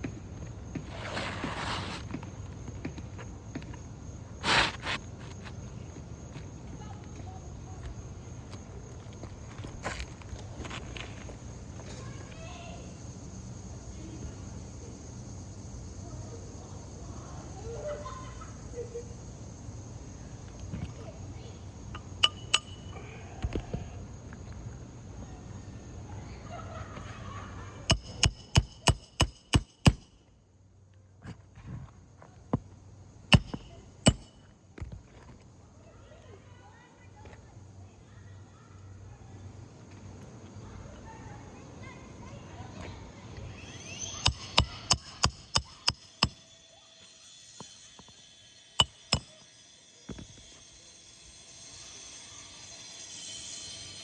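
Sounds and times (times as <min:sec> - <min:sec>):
hammer driving nails: 0:22.0 - 0:22.9, 0:27.9 - 0:30.1, 0:33.3 - 0:34.4, 0:44.2 - 0:46.4, 0:48.8 - 0:49.3.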